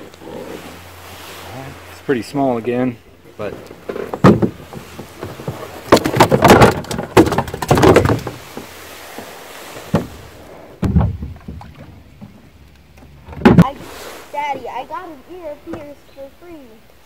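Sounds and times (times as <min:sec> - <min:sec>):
knocks and clatter: 0:03.4 - 0:08.7, 0:10.8 - 0:12.4
single thumps: 0:10.8 - 0:12.4.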